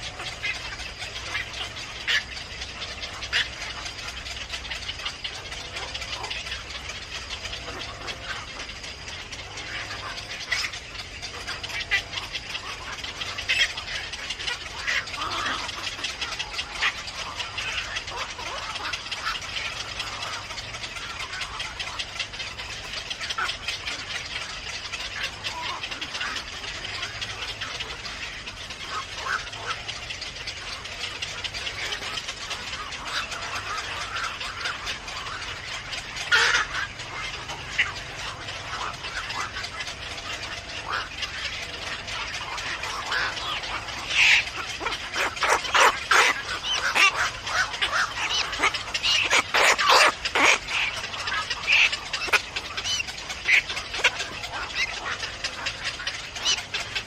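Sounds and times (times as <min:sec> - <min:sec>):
birds calling: 0:00.0 - 0:57.0.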